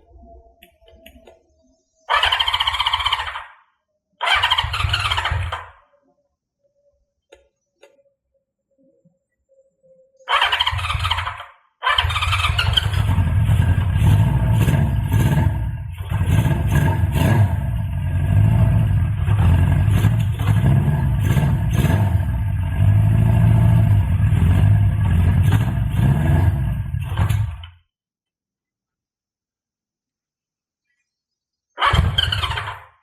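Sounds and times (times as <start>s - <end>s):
motorcycle engine running: 4.3s - 5.6s, 12.0s - 27.7s, 31.9s - 32.8s
electric starter cranking: 10.5s - 27.7s.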